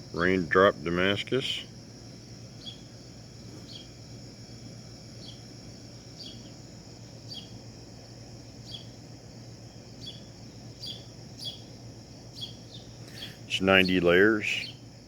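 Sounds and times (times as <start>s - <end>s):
insect trill: 0.0s - 15.0s
low steady hum: 0.0s - 15.0s
bird chirping: 2.6s - 2.9s, 3.7s - 3.9s, 5.2s - 5.4s, 6.2s - 6.6s, 7.3s - 7.6s, 8.6s - 8.9s, 10.0s - 11.7s, 12.3s - 14.8s.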